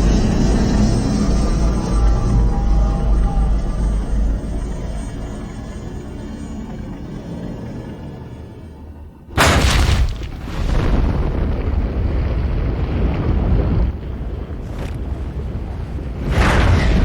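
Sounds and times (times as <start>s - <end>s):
heavy noisy rumble: 0.0s - 7.4s
loud blast: 9.3s - 12.2s.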